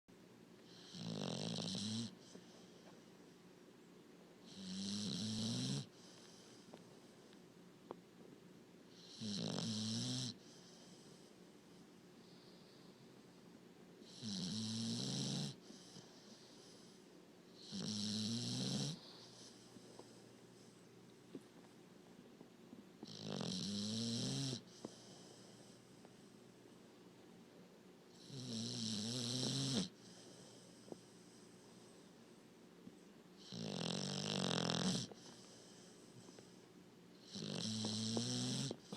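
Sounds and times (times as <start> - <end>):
puppy snoring: 0.6 - 2.6, 4.4 - 6.7, 8.9 - 11.2, 14.0 - 17.0, 17.6 - 20.8, 23.0 - 25.8, 28.1 - 31.9, 33.4 - 36.6, 37.2 - 38.9.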